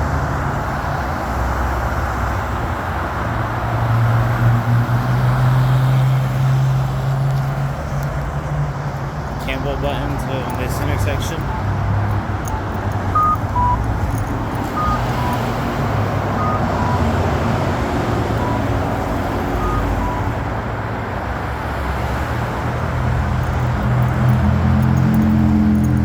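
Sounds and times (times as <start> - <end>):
road traffic: 0.0 - 26.0
vehicle engine: 0.0 - 26.0
pedestrian signal two-note beep: 12.4 - 13.9, 14.5 - 17.6, 18.2 - 20.4.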